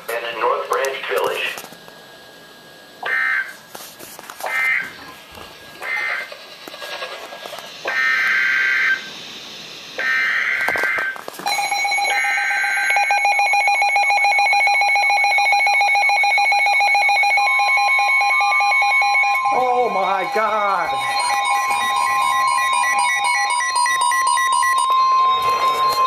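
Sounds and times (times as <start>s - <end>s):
electronic alert tone: 18.6s - 26.0s
buzzy digital bursts: 19.4s - 26.0s.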